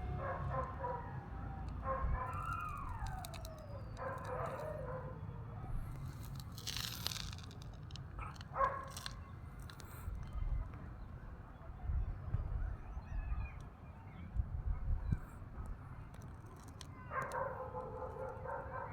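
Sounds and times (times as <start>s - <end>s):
brief rustle: 5.8s - 10.4s.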